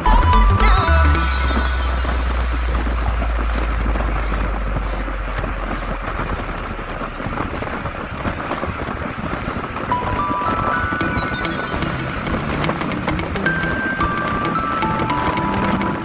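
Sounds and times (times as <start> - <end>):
chime-like musical notes: 0.0 - 4.8, 9.9 - 16.0
low rumble: 0.0 - 8.6
car wind and road noise: 1.4 - 11.1.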